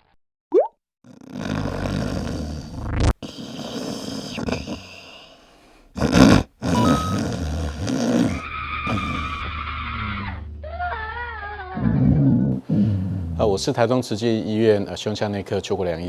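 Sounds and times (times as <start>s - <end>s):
whistle-like tone sinking in pitch: 6.8s - 7.4s.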